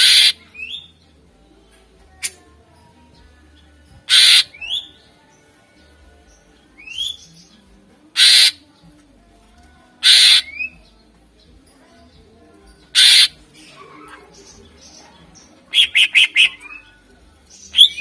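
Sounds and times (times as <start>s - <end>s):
bird harsh rasping calls: 0.0s - 0.9s, 4.0s - 5.0s, 8.1s - 8.6s, 10.0s - 10.8s, 12.8s - 18.0s.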